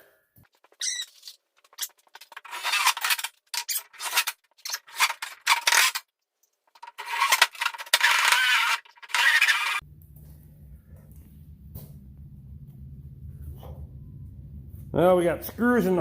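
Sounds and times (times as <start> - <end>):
screws grinding through plastic: 0.8 - 6.0, 6.8 - 9.8
power drill driving screws: 7.0 - 9.8.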